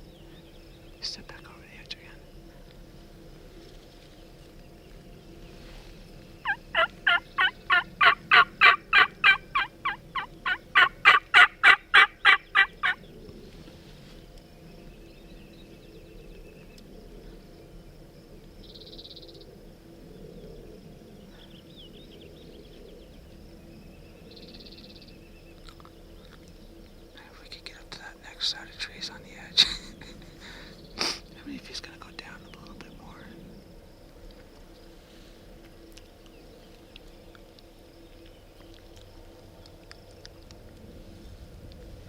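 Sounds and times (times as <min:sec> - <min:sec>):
turkey calling: 0:06.4 - 0:13.0.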